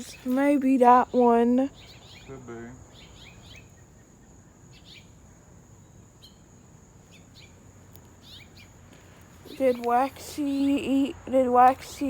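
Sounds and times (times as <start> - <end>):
high insect drone: 0.0 - 12.0
small bird chirping: 0.0 - 12.0.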